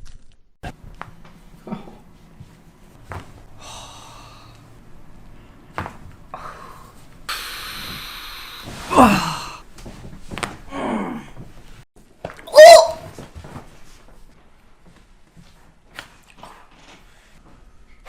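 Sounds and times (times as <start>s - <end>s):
person gasping loudly: 3.6s - 4.6s, 6.4s - 9.6s
long breathy exhale: 6.4s - 9.6s.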